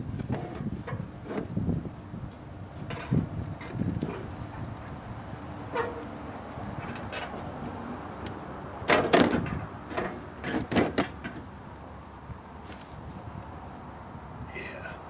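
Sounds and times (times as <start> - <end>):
vent parts knocking and clattering: 8.9 - 11.5.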